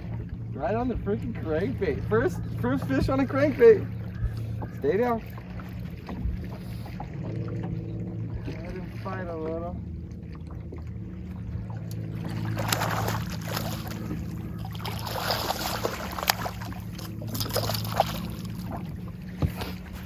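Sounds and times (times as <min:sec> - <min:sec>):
boat motor humming: 0:00.0 - 0:20.0
fish splashing in water: 0:10.4 - 0:20.0.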